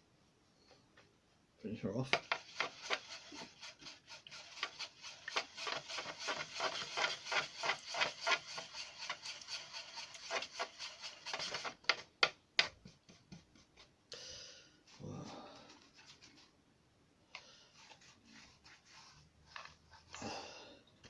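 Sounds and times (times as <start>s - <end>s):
paintbrush scrubbing on paper: 2.0s - 12.1s, 12.7s - 13.9s, 14.9s - 16.6s, 17.7s - 20.2s.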